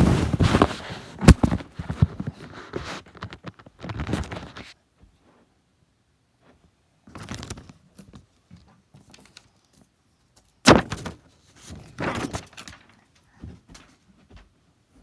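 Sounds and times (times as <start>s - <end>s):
knocks and handling noises: 0.0s - 4.7s
rustling: 0.0s - 4.8s.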